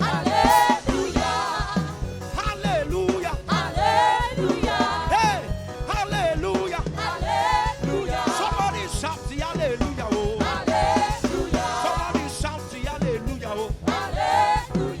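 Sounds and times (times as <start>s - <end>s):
band with bass and beat: 0.0s - 15.0s.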